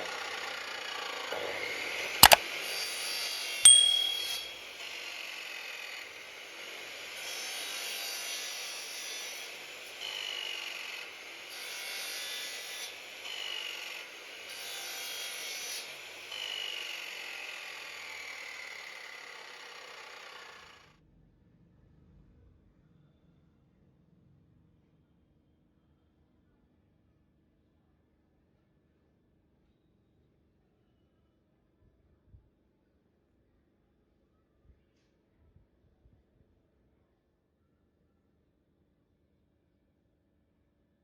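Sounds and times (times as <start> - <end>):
power cutter cutting wood: 0.0 - 2.7, 5.3 - 20.8
sharp click: 3.7 - 4.5.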